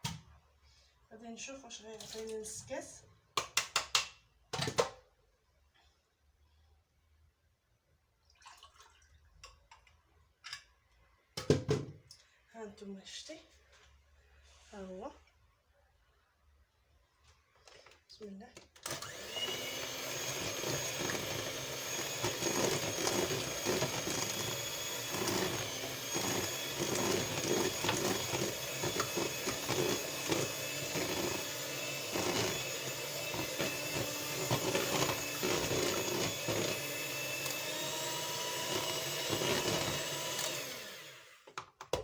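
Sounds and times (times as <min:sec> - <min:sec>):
electric mixer beating batter: 0:18.9 - 0:41.4.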